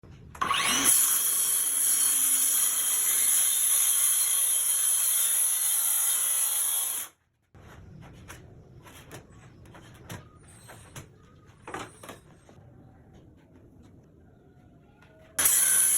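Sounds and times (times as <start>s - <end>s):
circular saw whining: 0.4s - 7.1s, 15.4s - 15.9s.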